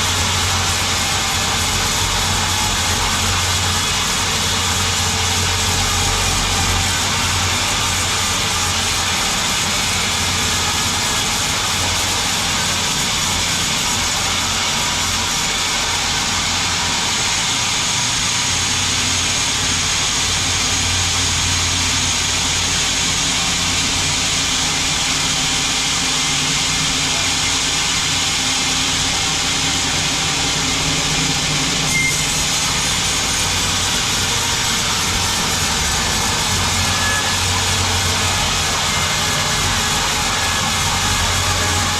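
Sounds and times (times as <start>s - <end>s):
sawmill machinery running: 0.0s - 41.9s.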